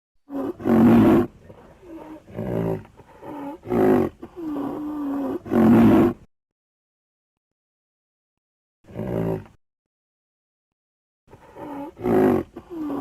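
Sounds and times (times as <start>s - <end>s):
rhinoceros groaning calls: 11.4s - 13.0s.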